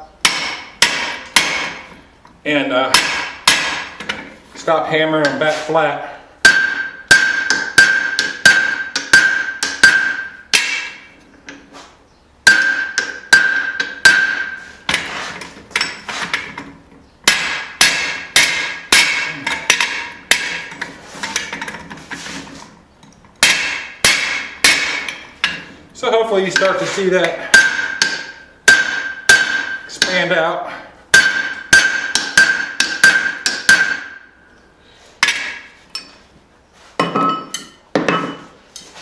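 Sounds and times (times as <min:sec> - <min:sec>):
hammer striking hot steel on anvil: 0:00.2 - 0:01.9, 0:02.9 - 0:04.2, 0:06.4 - 0:11.6, 0:12.4 - 0:15.1, 0:17.3 - 0:21.8, 0:23.4 - 0:25.7, 0:26.5 - 0:30.3, 0:31.1 - 0:34.4, 0:35.2 - 0:36.1
anvil ringing tone: 0:06.4 - 0:11.0, 0:26.5 - 0:30.2, 0:31.1 - 0:34.6.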